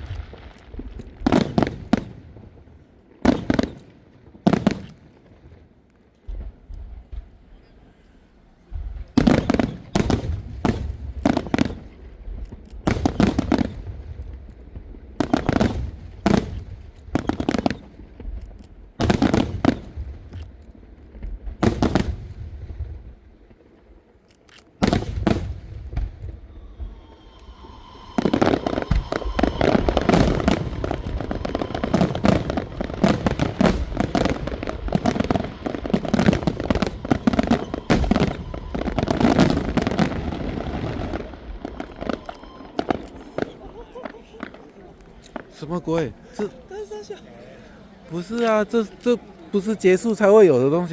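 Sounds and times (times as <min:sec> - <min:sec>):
fireworks bursting with crackling: 0:00.0 - 0:50.9
firework whistle: 0:12.8 - 0:14.2, 0:15.2 - 0:17.9, 0:24.8 - 0:45.5.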